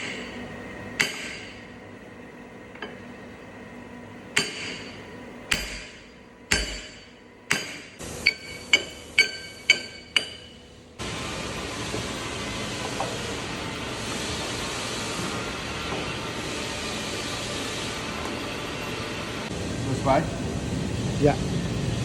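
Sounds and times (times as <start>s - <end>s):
hammer striking metal: 1.0s - 1.7s, 4.3s - 10.6s.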